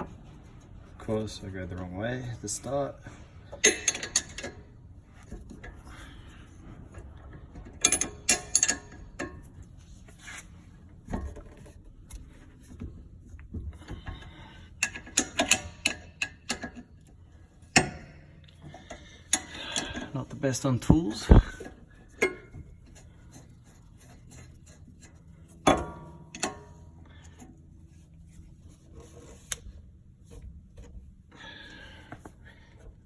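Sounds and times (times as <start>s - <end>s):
spanner clicking and clinking: 3.5s - 4.6s, 7.6s - 9.5s, 14.8s - 20.1s.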